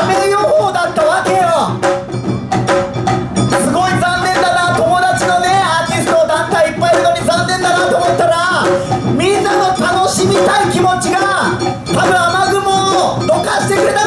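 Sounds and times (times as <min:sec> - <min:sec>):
dance music with singing: 0:03.5 - 0:14.0.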